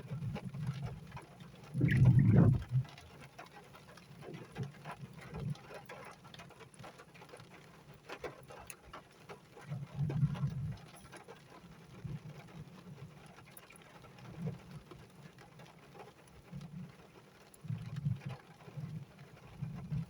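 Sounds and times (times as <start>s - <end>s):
rain falling in scattered drops: 0.0s - 20.0s
low rumble: 1.8s - 2.9s.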